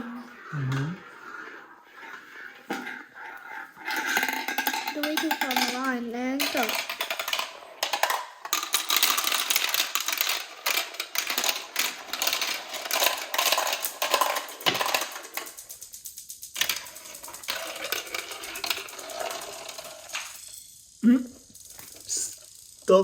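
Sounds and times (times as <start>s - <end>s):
marbles clattering down plastic track: 0.0s - 15.8s, 16.4s - 20.7s.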